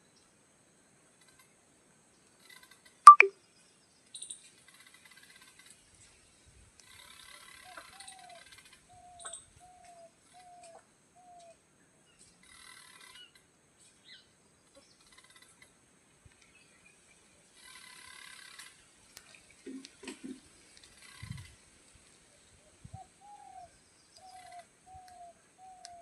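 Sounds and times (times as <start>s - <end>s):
soft high chirring: 3.1s - 3.3s.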